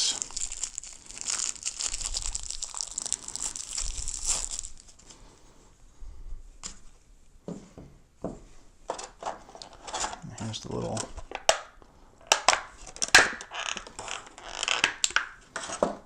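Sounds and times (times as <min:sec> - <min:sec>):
plastic packaging crinkling: 0:00.0 - 0:05.4, 0:12.2 - 0:15.8.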